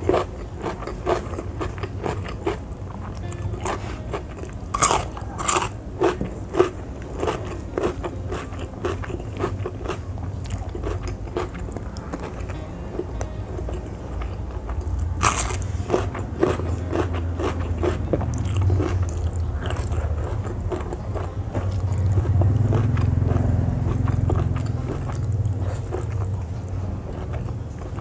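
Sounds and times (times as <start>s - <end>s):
person chewing food: 0.0s - 28.0s.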